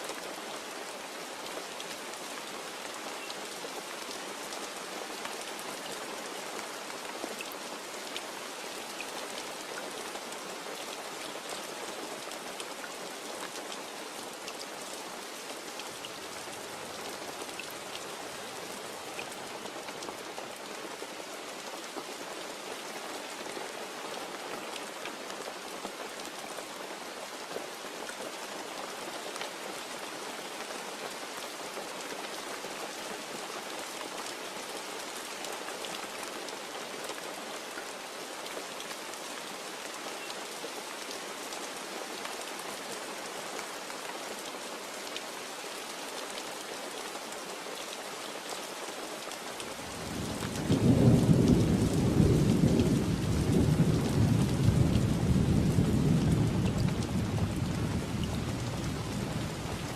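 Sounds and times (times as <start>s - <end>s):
steady rain hiss: 0.0s - 59.9s
raindrops ticking on a surface: 0.1s - 21.2s, 49.2s - 59.9s.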